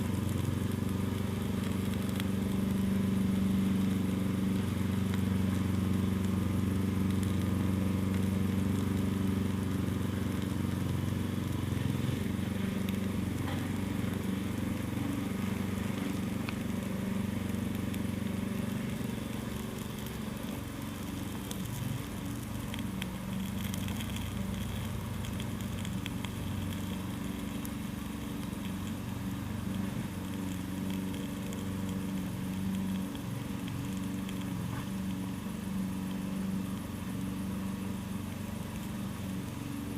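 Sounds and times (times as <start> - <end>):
crackers crackling and popping: 0.0 - 39.9
low engine-like hum: 0.0 - 39.9.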